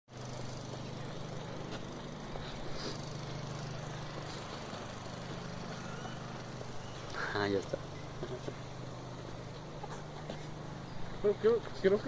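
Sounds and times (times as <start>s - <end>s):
vehicle engine humming: 0.1s - 12.0s
faint high chirps: 5.7s - 8.8s.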